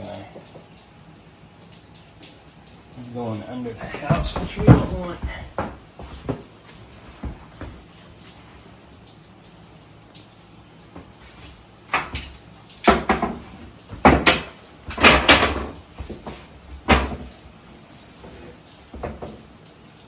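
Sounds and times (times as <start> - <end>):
hard objects knocking and clattering: 3.9 - 6.4, 11.9 - 17.3.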